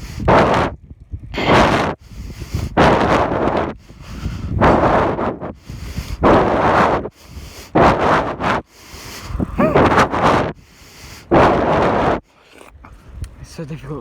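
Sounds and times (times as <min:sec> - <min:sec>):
heavy breathing into microphone: 0:00.0 - 0:00.3, 0:01.4 - 0:13.2
short voiced groan: 0:09.5 - 0:10.1.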